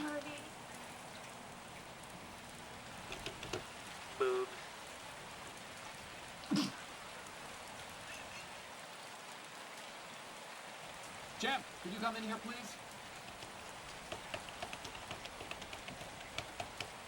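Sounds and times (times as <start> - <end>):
steady rain-like hiss: 0.0 - 17.0
tv dialogue: 2.7 - 4.6, 11.3 - 17.0
faint clicks: 3.0 - 3.7, 13.1 - 17.0.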